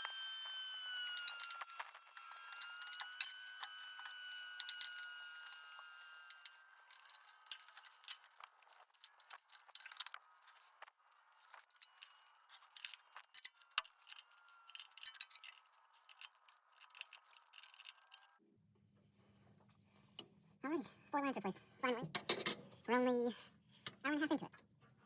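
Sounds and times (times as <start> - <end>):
hand tools clicking and clinking: 2.4 - 18.4, 22.0 - 22.8.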